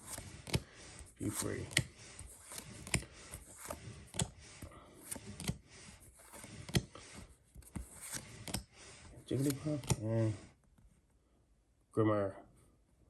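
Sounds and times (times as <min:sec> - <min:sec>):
trading cards clicking and snapping: 0:00.0 - 0:05.6, 0:06.2 - 0:06.9, 0:07.6 - 0:08.8, 0:09.4 - 0:10.0.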